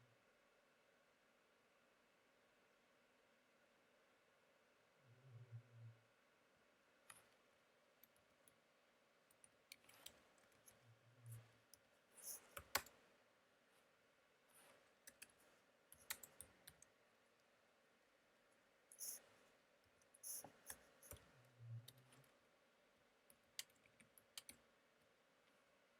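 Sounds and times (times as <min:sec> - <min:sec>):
keyboard typing and clicks: 0:09.3 - 0:13.0, 0:15.0 - 0:16.9, 0:20.2 - 0:22.2, 0:23.3 - 0:24.6.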